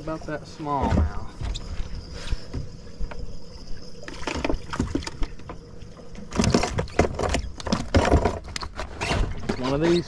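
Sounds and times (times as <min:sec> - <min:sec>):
faint hum: 0:00.0 - 0:07.7.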